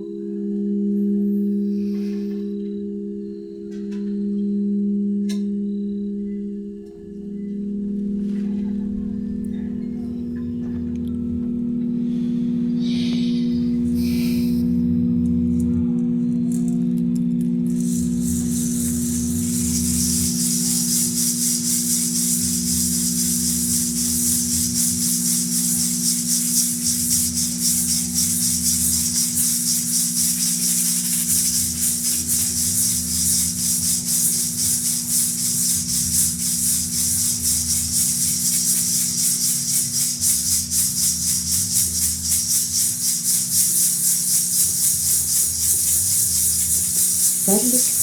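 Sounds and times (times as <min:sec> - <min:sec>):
low drone of steady tones: 0:00.0 - 0:48.0
hand rattle shaken rapidly: 0:17.7 - 0:48.0.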